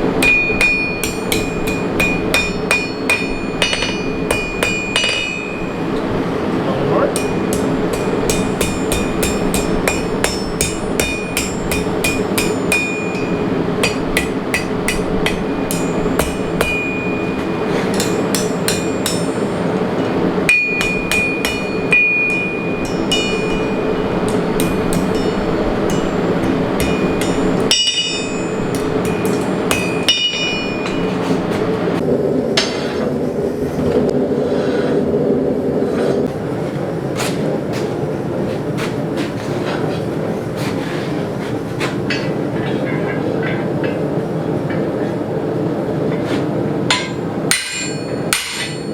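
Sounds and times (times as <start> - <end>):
hammer ringing on hot steel: 0.0 - 6.2, 7.0 - 33.0, 46.9 - 48.9
steady low hum: 0.0 - 48.9.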